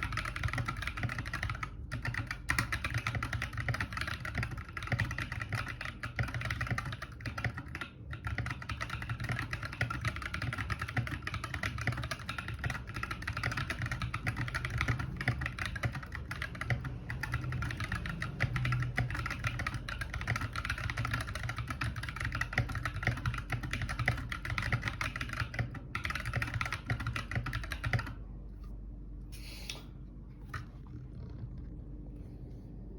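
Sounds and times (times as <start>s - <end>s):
typing on mechanical keyboard: 0.0s - 28.2s
faint steady hum: 0.0s - 32.9s.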